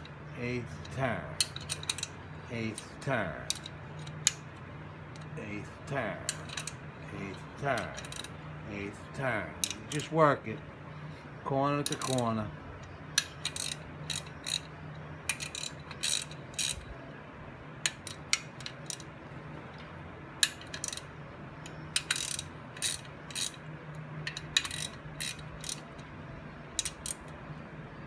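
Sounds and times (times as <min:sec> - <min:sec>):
hand ratchet clicking: 0:00.8 - 0:04.4, 0:06.2 - 0:08.3, 0:09.6 - 0:10.2, 0:11.8 - 0:16.9, 0:17.8 - 0:19.1, 0:20.4 - 0:26.1, 0:26.8 - 0:27.4.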